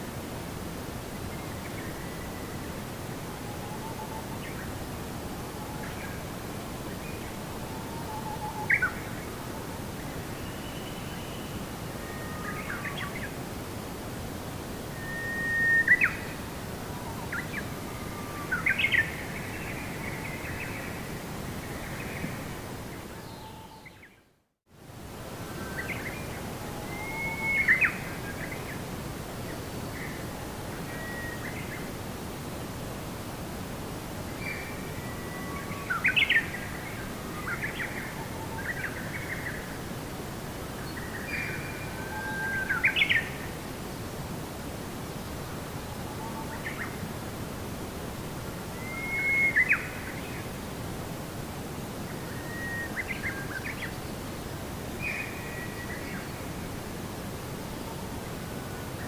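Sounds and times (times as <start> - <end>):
steady hissing background: 0.0 - 59.0.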